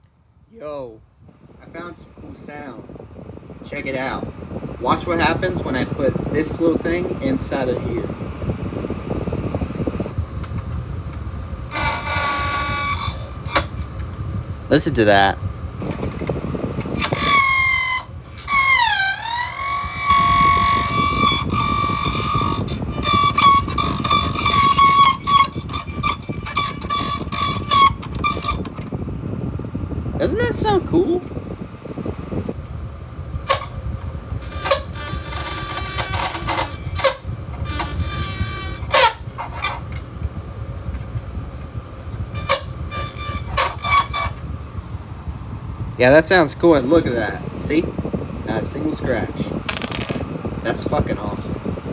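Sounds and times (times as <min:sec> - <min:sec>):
electric fan hum: 0:00.0 - 0:51.9
loud pitched buzz: 0:11.7 - 0:13.9, 0:15.8 - 0:32.6
fan blades striking a pen: 0:15.8 - 0:28.9, 0:34.4 - 0:39.4, 0:49.6 - 0:50.4.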